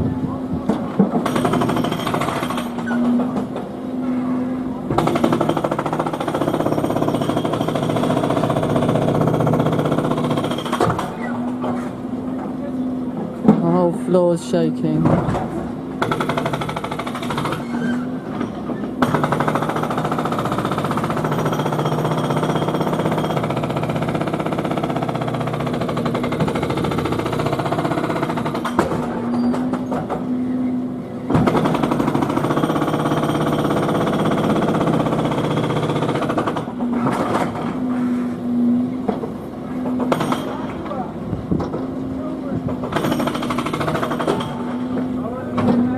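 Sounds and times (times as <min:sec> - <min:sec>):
jackhammer hammering: 0:01.0 - 0:03.4, 0:04.9 - 0:11.3, 0:16.0 - 0:17.8, 0:19.0 - 0:30.3, 0:31.3 - 0:37.9, 0:39.1 - 0:41.1, 0:42.7 - 0:45.3.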